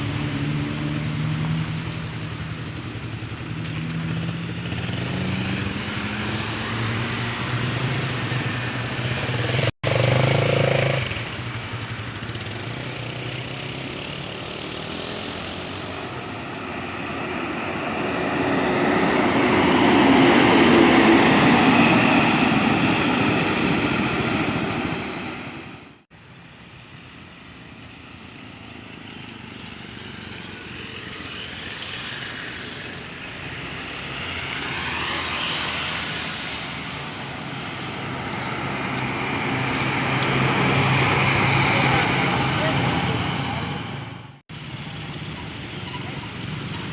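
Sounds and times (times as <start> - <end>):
buses driving past: 0.0 - 46.9.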